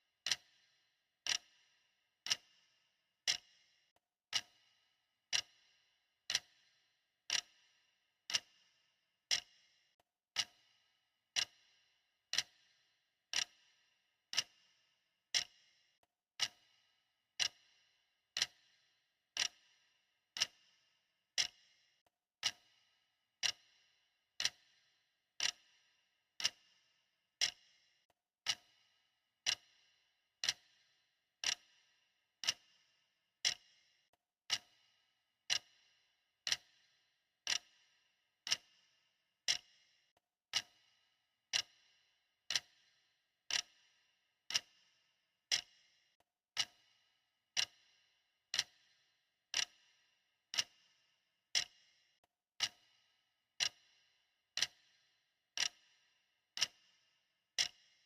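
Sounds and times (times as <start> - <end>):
clock ticking: 0.2 - 0.5, 1.2 - 1.5, 2.2 - 2.5, 3.3 - 3.5, 4.3 - 4.6, 5.3 - 5.6, 6.3 - 6.6, 7.3 - 7.6, 8.3 - 8.5, 9.3 - 9.5, 10.3 - 10.6, 11.3 - 11.6, 12.3 - 12.6, 13.3 - 13.6, 14.3 - 14.6, 15.3 - 15.6, 16.4 - 16.6, 17.4 - 17.6, 18.4 - 18.7, 19.4 - 19.6, 20.4 - 20.6, 21.4 - 21.6, 22.4 - 22.7, 23.4 - 23.7, 24.4 - 24.7, 25.4 - 25.8, 26.4 - 26.7, 27.4 - 27.6, 28.4 - 28.8, 29.4 - 29.7, 30.4 - 30.8, 31.4 - 31.7, 32.4 - 32.7, 33.4 - 33.7, 34.5 - 34.8, 35.5 - 35.8, 36.5 - 36.7, 37.5 - 37.8, 38.5 - 38.7, 39.5 - 39.7, 40.5 - 40.8, 41.5 - 41.8, 42.5 - 42.8, 43.5 - 43.8, 44.5 - 44.7, 46.5 - 46.9, 47.5 - 47.8, 48.5 - 48.8, 49.5 - 49.8, 50.5 - 50.8, 51.5 - 51.8, 52.6 - 52.9, 53.6 - 53.8, 54.6 - 54.8, 55.6 - 55.8, 56.6 - 56.8, 57.6 - 57.8.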